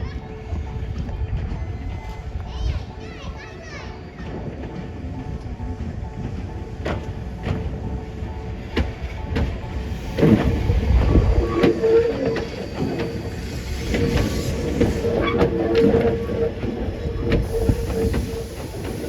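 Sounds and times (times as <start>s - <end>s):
electric train rumble and high tone: 0.0s - 19.0s
wheels clicking over rail joints: 2.4s - 19.0s.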